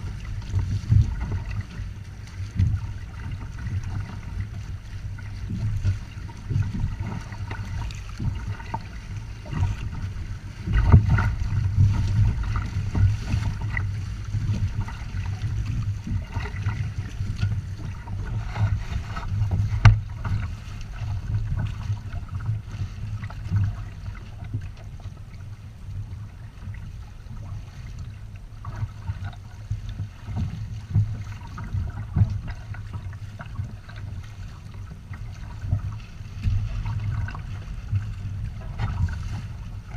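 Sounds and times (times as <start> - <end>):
wind buffeting microphone: 0.0 - 25.0
water rushing along hulls: 0.0 - 39.9.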